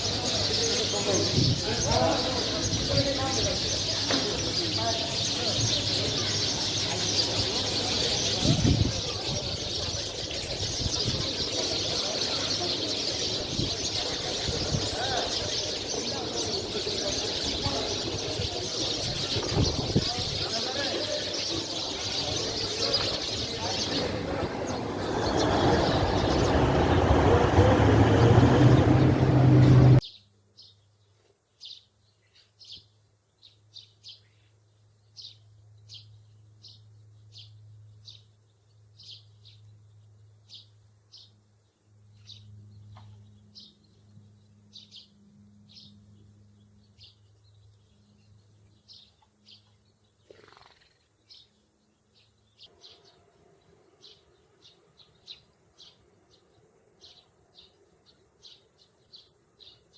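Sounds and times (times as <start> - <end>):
sparrows chirping: 0.0 - 59.9
loud rushing noise: 23.8 - 30.0.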